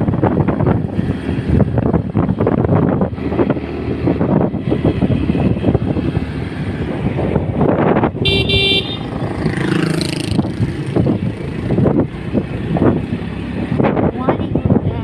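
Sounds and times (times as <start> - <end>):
road traffic rumble: 0.0 - 15.0
vehicle horn tooting: 8.2 - 9.1.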